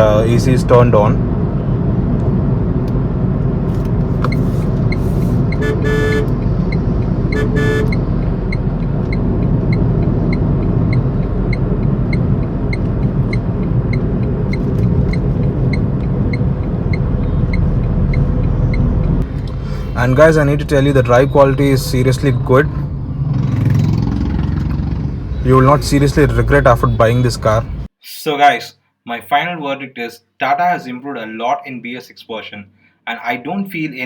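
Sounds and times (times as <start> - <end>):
car engine and road drone: 0.0 - 27.9
car horn: 4.4 - 8.6, 25.2 - 27.8.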